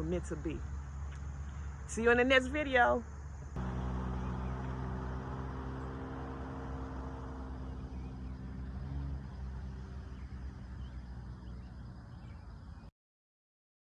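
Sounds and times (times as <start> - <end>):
vehicle engine idling: 3.1 - 12.9.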